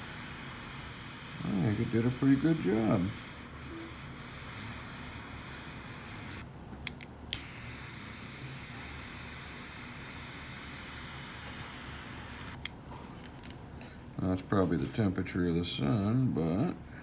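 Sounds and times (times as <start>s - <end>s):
torch lighter hissing: 0.0s - 13.6s
sharp lighter clicks: 2.3s - 13.6s.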